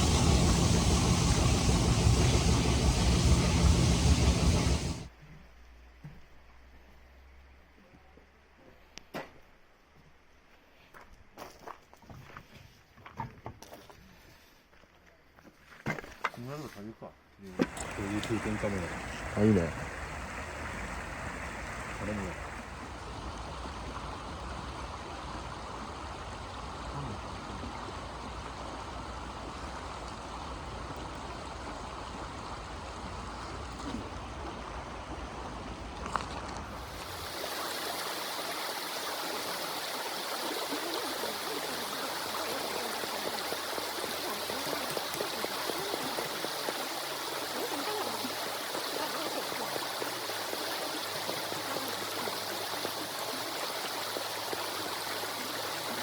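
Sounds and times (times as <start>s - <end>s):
rushing noise: 0.0s - 5.1s.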